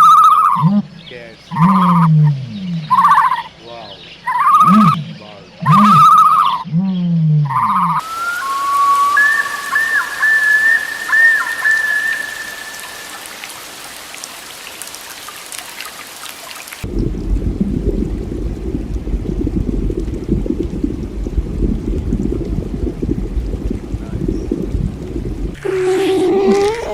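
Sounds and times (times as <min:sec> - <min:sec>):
wavering whistling tone: 0:00.0 - 0:00.8, 0:01.5 - 0:03.5, 0:04.3 - 0:13.4
rain-like hiss: 0:01.0 - 0:02.3, 0:02.9 - 0:06.0, 0:08.0 - 0:26.9.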